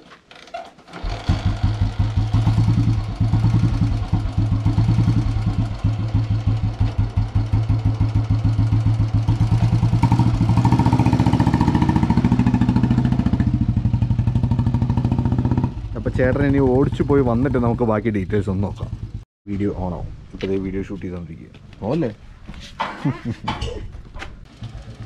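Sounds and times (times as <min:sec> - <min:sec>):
motorcycle engine idling: 0:00.9 - 0:19.2, 0:24.4 - 0:25.0.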